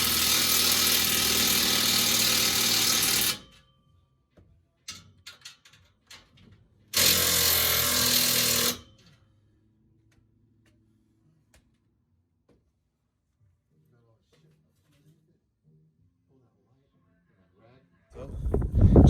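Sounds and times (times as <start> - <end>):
handheld power tool running: 0.0 - 3.5, 7.0 - 8.9.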